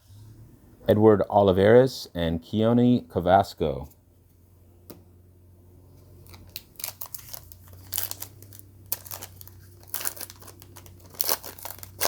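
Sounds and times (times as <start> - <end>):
foil wrapper crinkling and tearing: 6.2 - 12.0.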